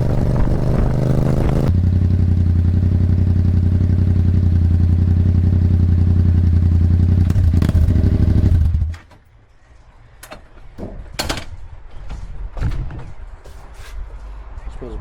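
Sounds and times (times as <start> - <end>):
motorcycle engine idling: 0.0 - 8.9
clicks and knocks: 10.2 - 13.0.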